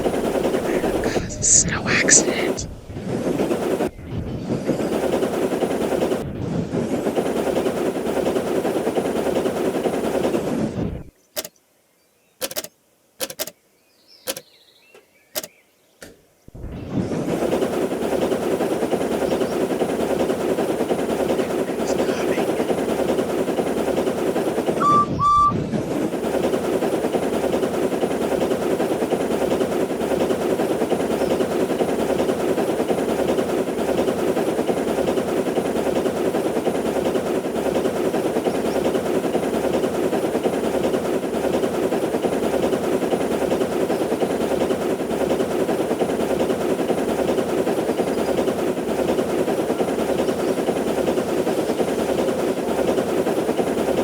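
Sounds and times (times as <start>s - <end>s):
train clattering: 0.0s - 11.1s, 16.8s - 54.0s
short high whistle toots: 24.8s - 25.6s.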